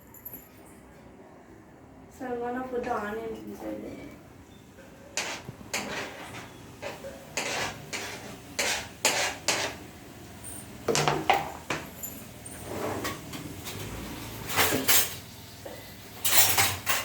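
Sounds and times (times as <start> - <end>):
utensil scraping a pan: 5.1 - 9.9.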